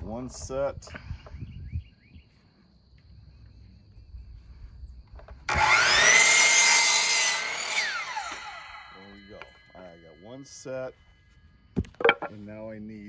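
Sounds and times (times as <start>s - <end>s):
power saw cutting wood: 5.5s - 9.9s.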